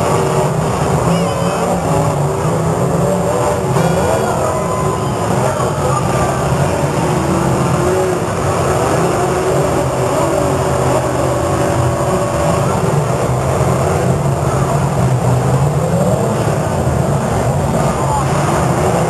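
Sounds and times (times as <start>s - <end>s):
car engines revving: 0.0s - 19.0s.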